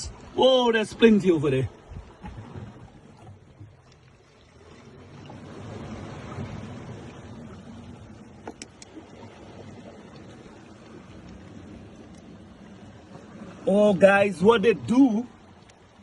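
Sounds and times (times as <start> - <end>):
sea surf: 0.0 - 16.0
wind: 0.0 - 16.0
faint clicks: 8.4 - 9.0.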